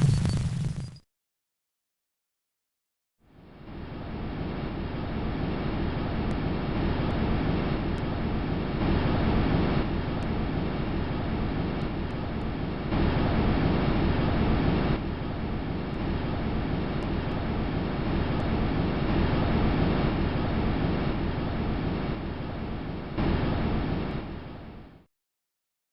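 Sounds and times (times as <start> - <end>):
low wind-like rushing rumble: 3.2 - 25.0.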